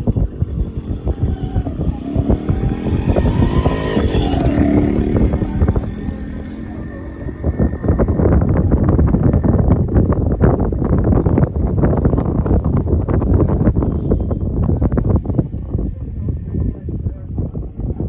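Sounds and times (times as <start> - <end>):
motor engine passing: 0.0 - 9.4
wind buffeting microphone: 0.0 - 18.0.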